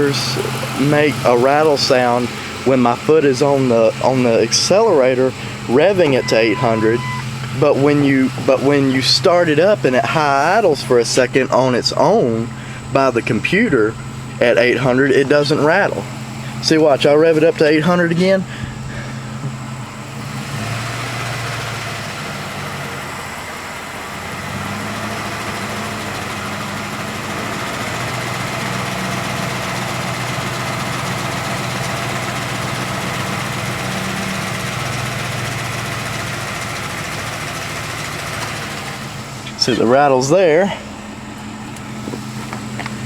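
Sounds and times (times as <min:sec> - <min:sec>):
engine running with rattle: 0:00.0 - 0:43.0.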